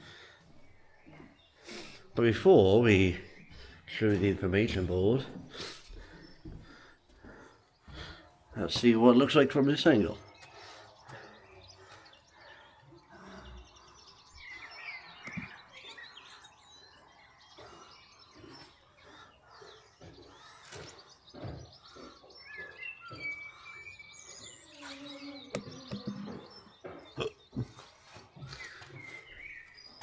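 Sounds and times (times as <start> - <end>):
outdoor background noise: 0.0 - 30.0
small birds chirping: 0.0 - 30.0.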